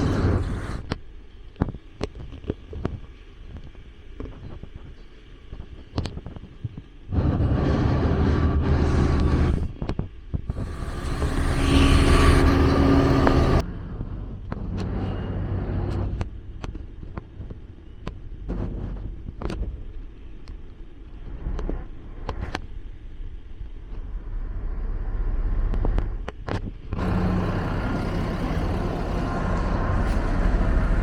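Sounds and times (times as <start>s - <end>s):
vehicle engines passing close: 10.5s - 13.7s, 27.0s - 31.0s.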